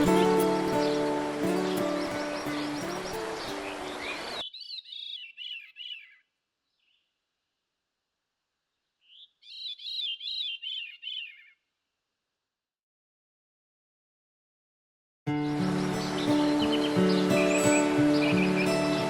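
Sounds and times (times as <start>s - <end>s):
background music: 0.0s - 3.9s, 15.4s - 19.0s
songbird chirping: 0.0s - 7.1s, 8.7s - 11.6s, 15.3s - 19.0s.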